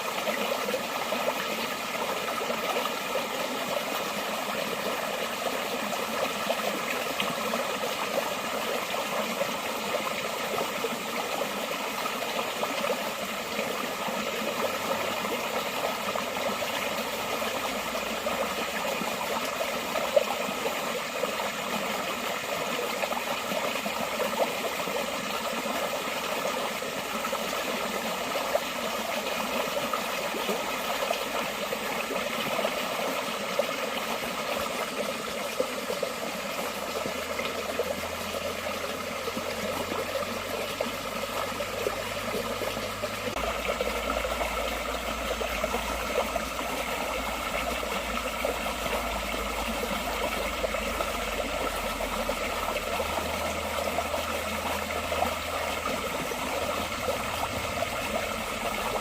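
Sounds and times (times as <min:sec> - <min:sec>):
stream babbling: 0:00.0 - 0:59.0
small water splashes: 0:30.2 - 0:59.0.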